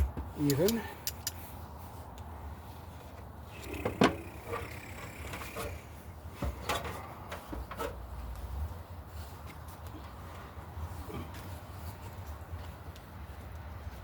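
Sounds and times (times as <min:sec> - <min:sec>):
light tool clicks: 0:00.4 - 0:01.4.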